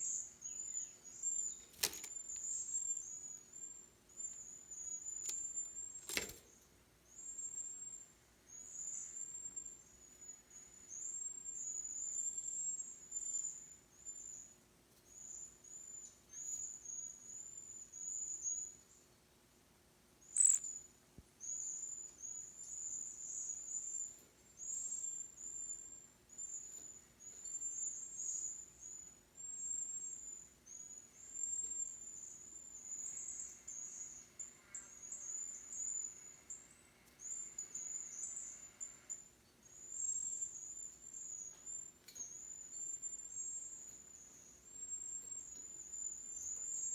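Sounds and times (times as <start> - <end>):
sharp clicks: 1.6 - 2.5.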